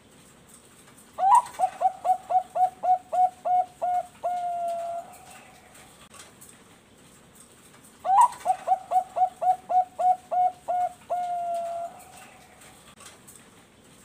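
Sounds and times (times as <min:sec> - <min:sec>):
dove cooing: 0:01.2 - 0:06.0, 0:08.0 - 0:12.9.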